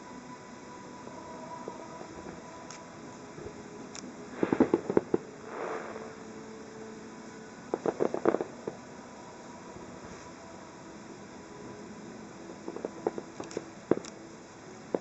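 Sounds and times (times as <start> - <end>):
rushing hiss: 0.4 - 15.0
fireworks bangs and pops: 4.4 - 6.2.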